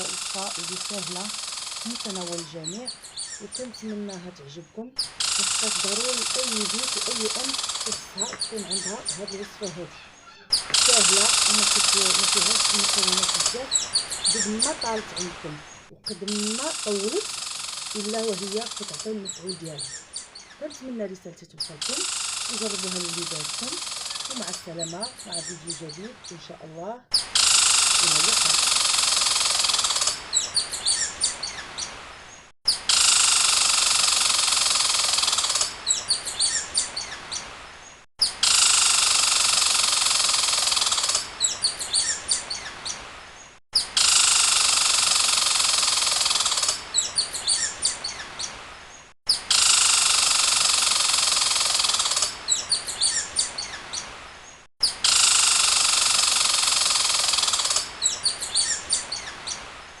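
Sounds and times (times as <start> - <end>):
bird trilling and chirping: 0.0 - 31.9, 35.1 - 37.5, 41.0 - 43.0, 46.2 - 48.6, 51.6 - 54.1, 57.0 - 59.6.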